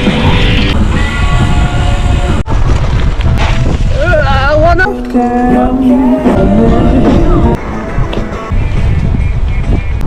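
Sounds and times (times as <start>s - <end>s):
music with singing voice: 4.9s - 9.8s.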